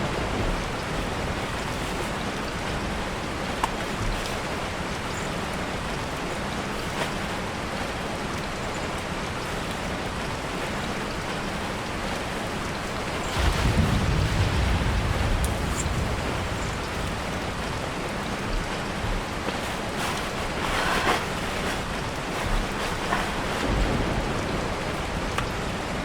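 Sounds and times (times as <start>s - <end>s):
steady rain hiss: 0.0s - 26.0s
single raindrop hits: 13.0s - 19.2s.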